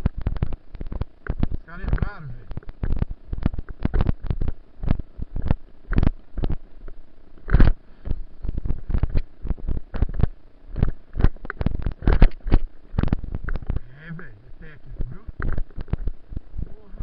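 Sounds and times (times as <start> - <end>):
rapid knocks and thumps: 0.0 - 13.9, 15.0 - 16.7.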